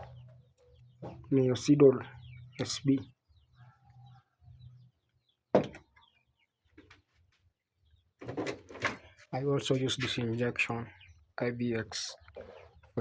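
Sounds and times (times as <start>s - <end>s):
chicks chirping: 0.0s - 7.2s.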